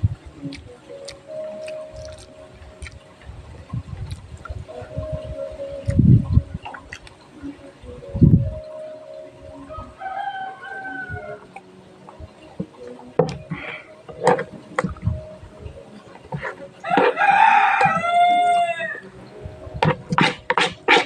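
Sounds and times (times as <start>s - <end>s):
person eating noodles: 0.5s - 3.0s
rooster crowing: 9.7s - 11.5s, 16.8s - 19.1s.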